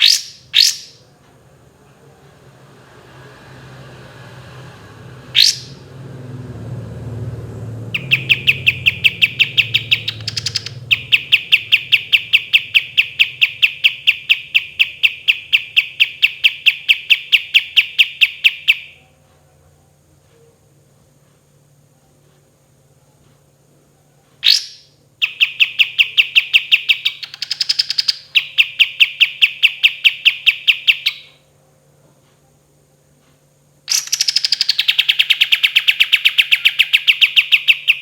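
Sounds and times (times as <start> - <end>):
bird whistle: 0.0 - 1.0, 5.3 - 5.8, 7.9 - 19.0, 24.4 - 31.4, 33.9 - 38.0
rapid series of sharp bird notes: 0.0 - 1.1, 5.3 - 5.9, 7.9 - 19.0, 24.4 - 31.4, 33.9 - 38.0.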